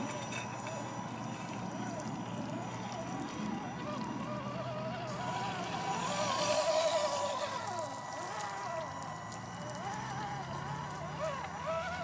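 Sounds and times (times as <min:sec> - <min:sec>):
rc car electric motor whining: 0:00.0 - 0:12.0.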